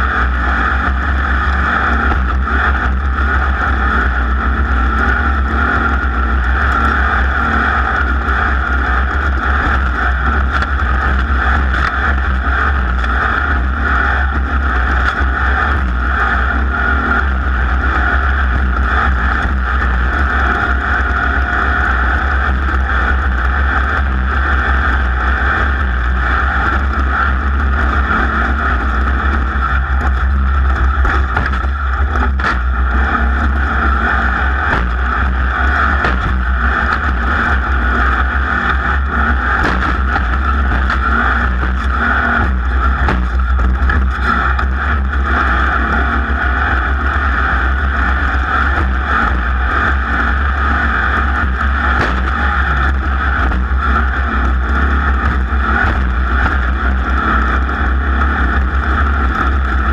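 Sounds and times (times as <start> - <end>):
race vehicle engine running hard: 0.0 - 59.9
knocks and rattles: 30.1 - 32.7, 39.6 - 44.4.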